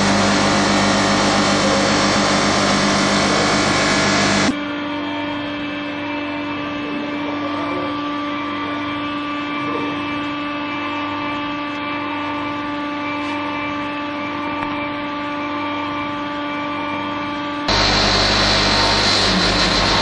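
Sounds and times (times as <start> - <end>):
rough machine noise: 0.0 - 4.6, 17.7 - 20.0
machine hum with pitched tone: 0.0 - 20.0.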